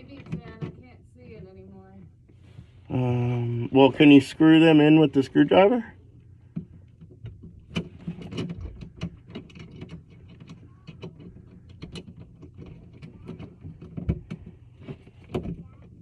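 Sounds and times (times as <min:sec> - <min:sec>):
tools clicking and scraping: 0:06.5 - 0:16.0.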